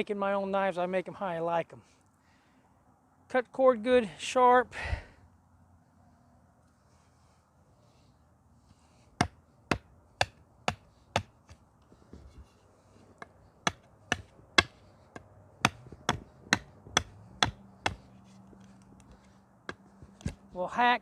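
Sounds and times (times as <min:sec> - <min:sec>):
knife chopping wood: 0:09.2 - 0:11.6, 0:13.2 - 0:20.6.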